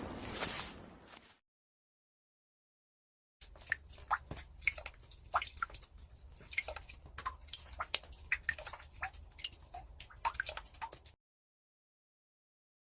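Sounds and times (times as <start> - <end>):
water drops plinking: 3.4 - 10.8.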